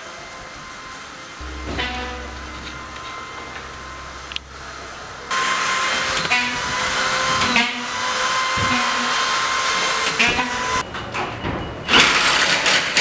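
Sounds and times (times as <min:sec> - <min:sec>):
whirring machine with whine: 0:00.0 - 0:12.1
low hum: 0:01.4 - 0:08.4.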